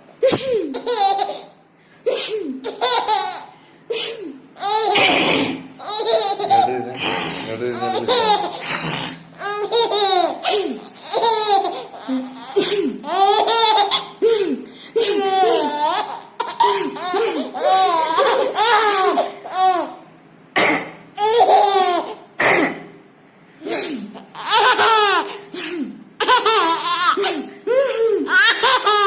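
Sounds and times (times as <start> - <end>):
baby sneezing: 0.2 - 0.8, 2.1 - 2.7, 3.9 - 5.8, 10.4 - 10.9, 12.6 - 13.0, 14.3 - 15.7, 23.6 - 24.3, 25.3 - 26.0, 27.1 - 28.7
baby giggling and laughing: 0.2 - 20.0, 21.2 - 22.3, 23.6 - 25.4, 26.2 - 29.0.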